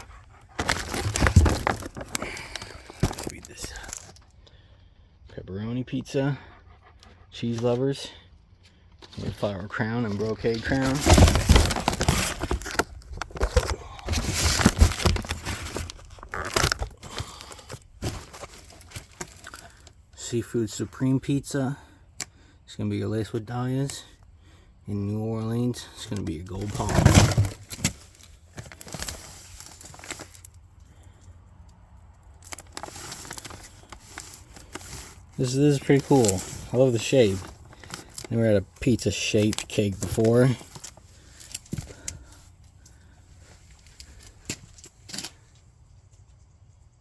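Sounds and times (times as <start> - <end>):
packaging crinkling and rustling: 0.0 - 4.3, 10.1 - 19.9, 26.4 - 31.0, 32.4 - 42.9.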